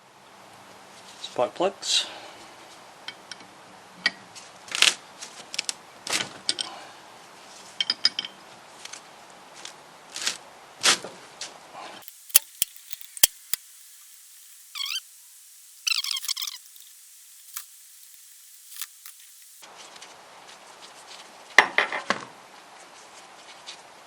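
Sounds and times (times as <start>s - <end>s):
sharp clicks: 12.0s - 19.6s.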